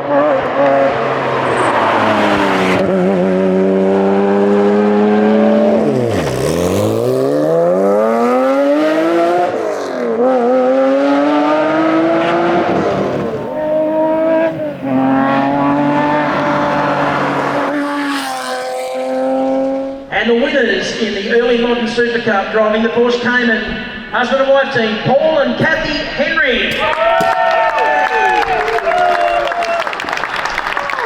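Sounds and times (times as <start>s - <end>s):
car engine revving hard: 0.0s - 20.1s.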